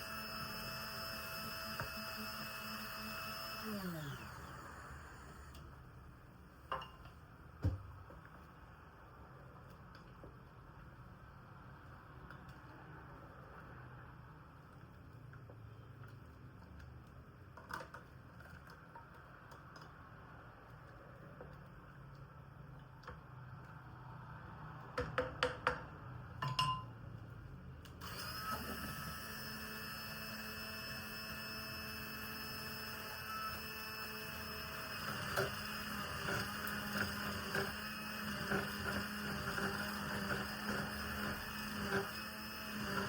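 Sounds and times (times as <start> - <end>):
kitchen appliance motor humming: 0.0 - 5.7, 28.0 - 43.0
kitchenware clinking: 26.4 - 26.9.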